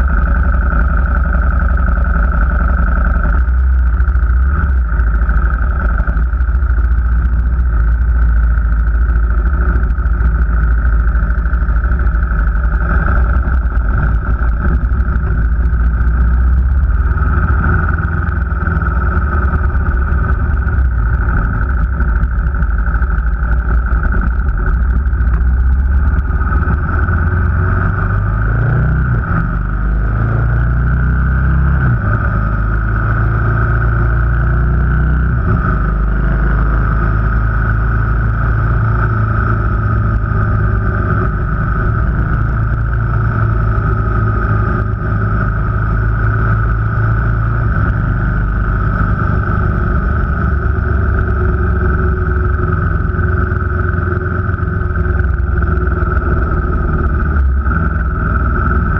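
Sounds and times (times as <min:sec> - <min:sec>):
car engine: 0:00.0 - 0:58.9
road noise: 0:00.0 - 0:58.9.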